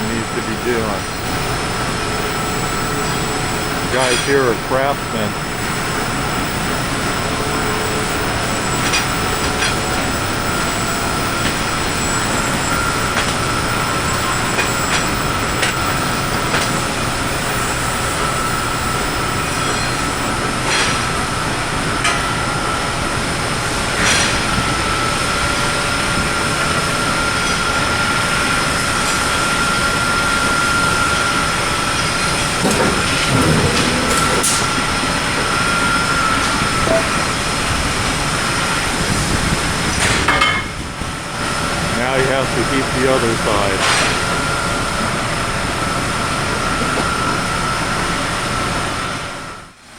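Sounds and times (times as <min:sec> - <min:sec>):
high-pitched machine whine: 0:00.0 - 0:49.8
forging machinery din: 0:32.6 - 0:35.7
sharp metallic knocks: 0:36.8 - 0:37.4.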